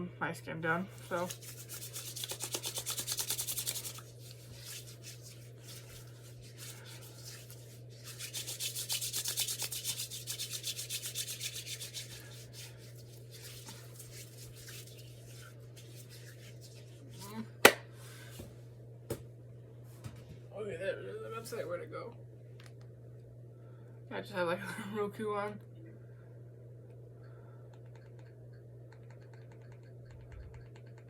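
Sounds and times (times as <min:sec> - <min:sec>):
hands rubbing on skin: 0:00.9 - 0:17.4.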